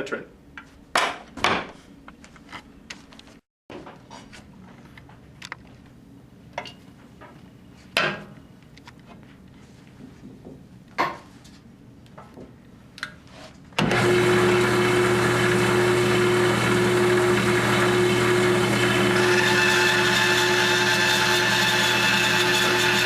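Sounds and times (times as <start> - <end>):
band saw motor hum: 13.8 - 23.0.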